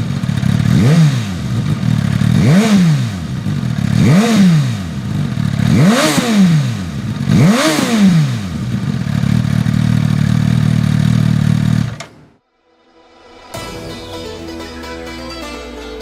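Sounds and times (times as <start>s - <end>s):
motorcycle engine revving and idling: 0.0s - 12.4s
guitar music: 12.7s - 16.0s.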